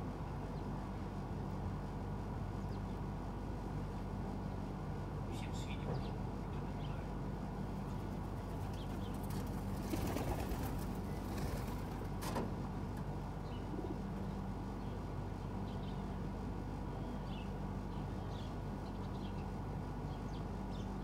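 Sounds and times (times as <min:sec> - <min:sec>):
steady low hum: 0:00.0 - 0:21.0
small birds chirping: 0:05.3 - 0:07.1, 0:07.8 - 0:11.8, 0:13.4 - 0:16.2, 0:16.9 - 0:21.0
rustle of feathers: 0:07.8 - 0:12.4.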